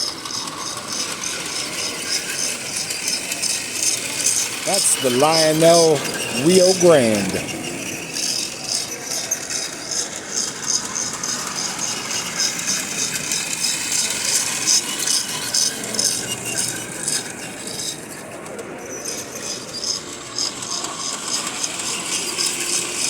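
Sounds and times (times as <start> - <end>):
toy train clicking on track: 0.0 - 23.0
hall background hum: 4.7 - 8.1.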